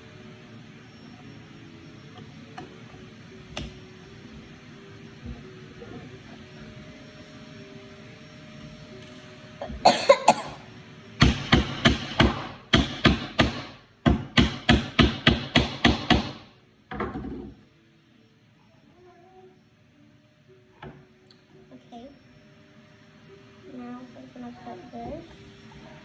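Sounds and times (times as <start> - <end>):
hammer striking nails into wood: 11.2 - 16.4.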